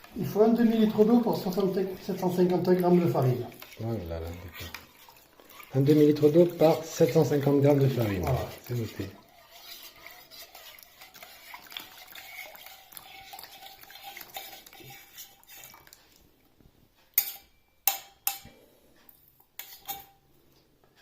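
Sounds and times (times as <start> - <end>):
spoon stirring in a bucket: 0.0 - 16.3, 17.1 - 20.2.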